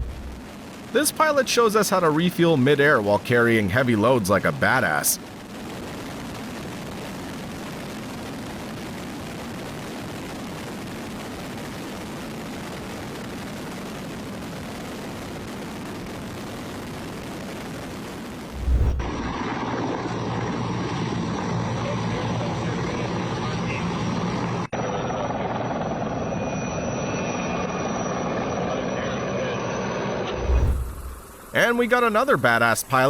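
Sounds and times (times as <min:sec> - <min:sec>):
low thump: 0:00.0 - 0:00.4, 0:30.4 - 0:31.2
aircraft engines and rotors droning: 0:00.0 - 0:01.2, 0:18.5 - 0:31.6
low steady hum: 0:00.0 - 0:05.2, 0:18.5 - 0:19.4, 0:30.3 - 0:32.4.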